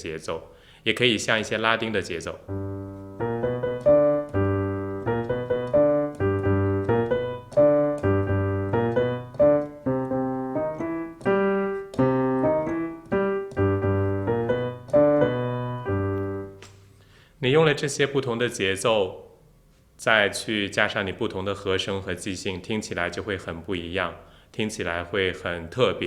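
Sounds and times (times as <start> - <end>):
piano playing blues: 2.4 - 16.7.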